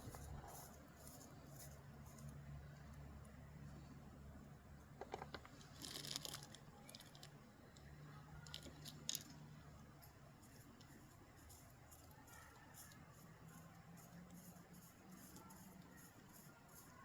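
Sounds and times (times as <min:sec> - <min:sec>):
light clicks of small rocks: 0:05.2 - 0:09.4
gritty sand rustle: 0:10.0 - 0:17.0.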